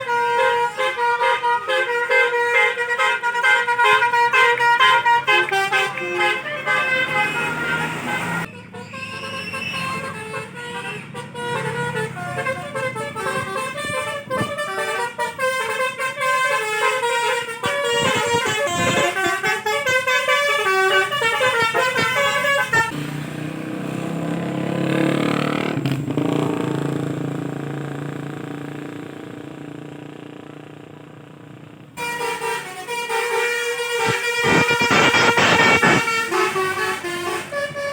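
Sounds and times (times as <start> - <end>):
bus horns playing melody: 0.0 - 23.0, 32.0 - 37.9
bus engine: 0.0 - 37.9.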